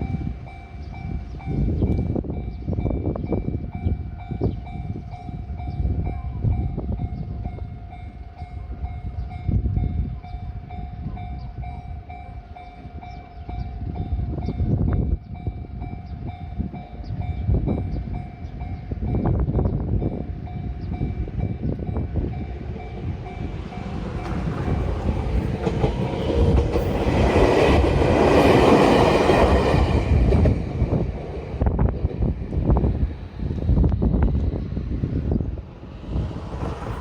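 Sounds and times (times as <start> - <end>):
level crossing warning bell: 0.0 - 31.6
low rumbles: 19.0 - 37.0.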